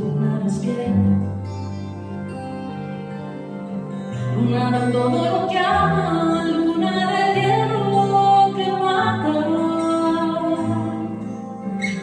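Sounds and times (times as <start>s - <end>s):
woman singing slow song: 0.0s - 1.5s, 4.3s - 11.3s.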